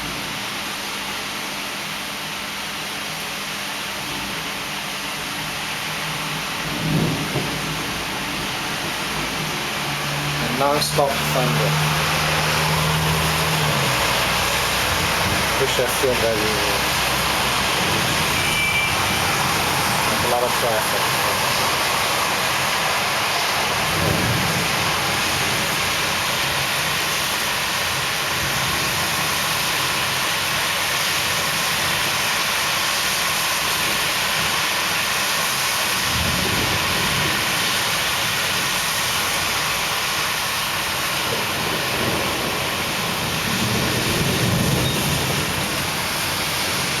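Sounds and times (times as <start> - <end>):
heavy rain: 0.0 - 47.0
thunder rumbles: 6.6 - 30.2, 35.9 - 39.2, 41.2 - 47.0.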